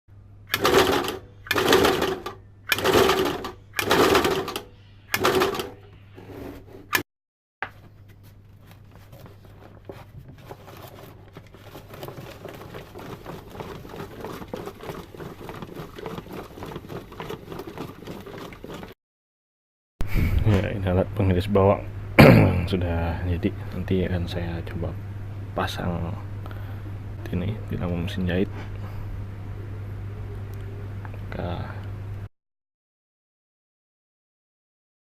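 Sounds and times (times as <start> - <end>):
sewing machine motor clattering: 0.5 - 5.8, 10.8 - 19.0.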